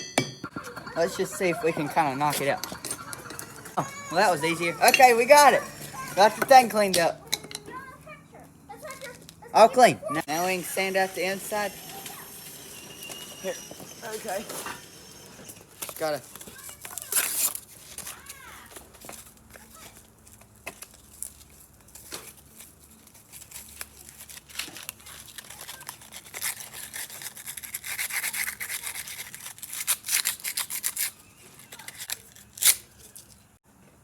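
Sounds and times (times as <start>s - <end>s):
sandpaper rasping on metal: 10.2s - 16.2s, 25.4s - 32.0s.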